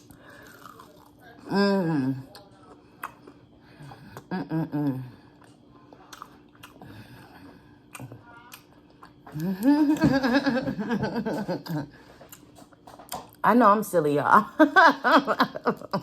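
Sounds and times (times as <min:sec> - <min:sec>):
chewing with crunches: 0:00.0 - 0:01.5, 0:02.2 - 0:04.3, 0:04.9 - 0:09.8, 0:12.0 - 0:13.4
person humming: 0:09.3 - 0:10.0.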